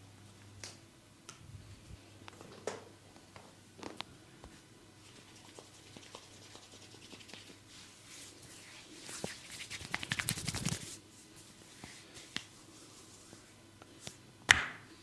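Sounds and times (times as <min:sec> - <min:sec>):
hands scratching hair: 0:05.0 - 0:11.0.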